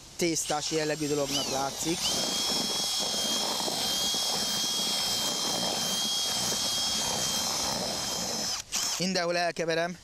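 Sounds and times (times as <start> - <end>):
mixer stirring wet groundbait: 0.4 - 8.5
electric drill mixer whining: 0.5 - 9.1.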